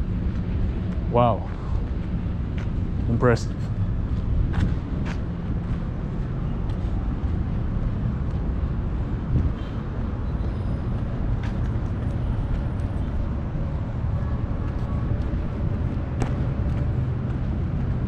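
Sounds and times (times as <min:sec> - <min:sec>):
rumble of passing vehicles: 0:00.0 - 0:18.0.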